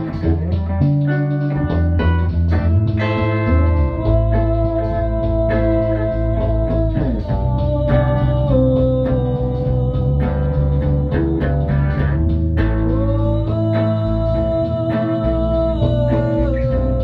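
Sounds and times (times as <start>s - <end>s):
live rock band playing: 0.0s - 8.6s
guitar sliding held notes: 0.0s - 17.0s.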